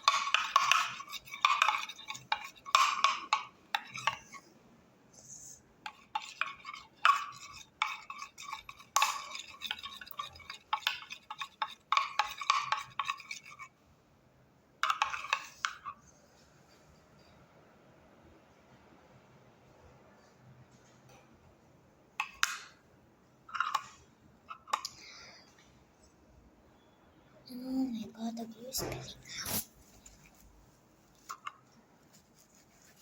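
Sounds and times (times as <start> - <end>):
utensil stirring slime: 0.0 - 13.8, 14.8 - 16.2, 23.5 - 25.1, 27.5 - 33.0.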